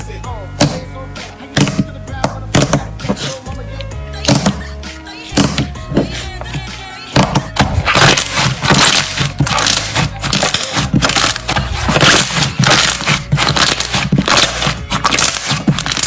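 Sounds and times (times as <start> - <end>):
slime crackling and popping: 7.9 - 16.0.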